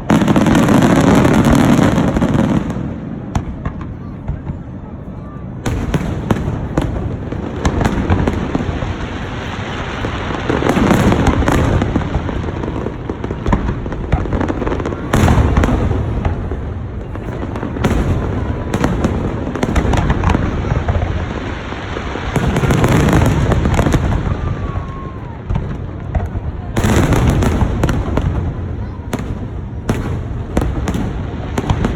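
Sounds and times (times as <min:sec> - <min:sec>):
fireworks bursting and crackling: 0:00.0 - 0:31.9.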